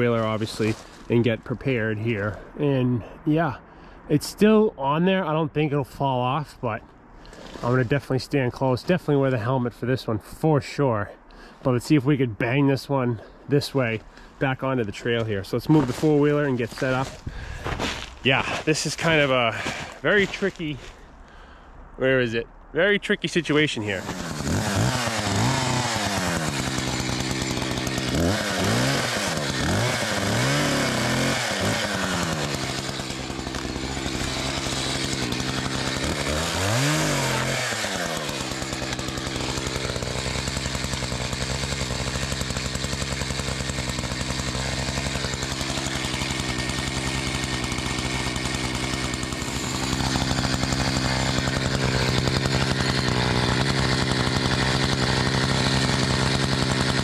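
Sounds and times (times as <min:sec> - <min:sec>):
chainsaw revving: 0:00.0 - 0:01.2, 0:15.7 - 0:17.2, 0:17.9 - 0:20.9, 0:23.8 - 0:57.0.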